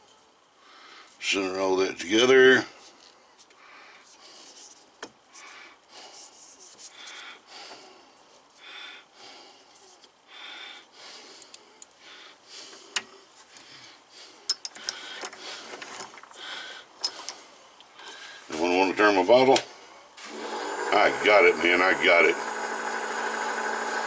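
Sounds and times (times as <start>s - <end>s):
soft rubbing strokes: 2.7s - 8.7s.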